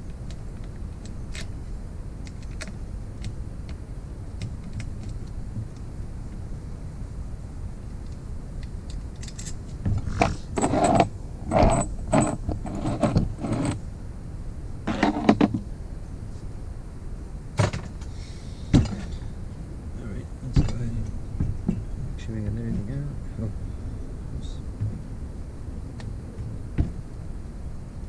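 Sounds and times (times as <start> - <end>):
metal engine parts clinking: 9.1 - 13.8.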